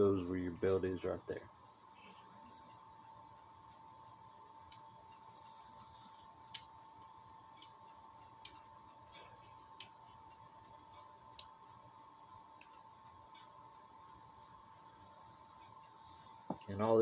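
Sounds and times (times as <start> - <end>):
faint high whine: 0.0 - 2.9.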